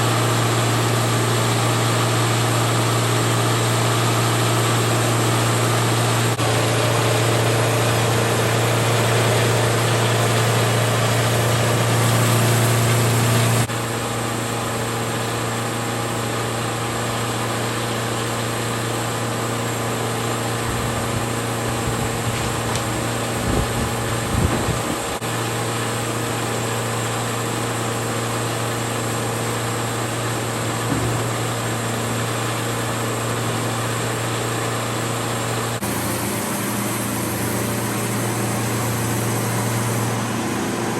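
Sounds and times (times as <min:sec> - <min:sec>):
engine humming: 0:00.0 - 0:13.7, 0:29.5 - 0:34.6, 0:35.5 - 0:40.9
low thumps: 0:30.8 - 0:31.7.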